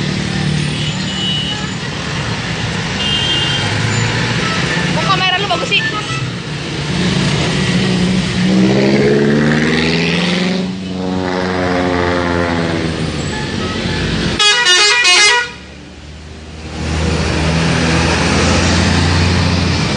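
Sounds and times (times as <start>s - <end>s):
musical air horn: 13.3s - 15.6s.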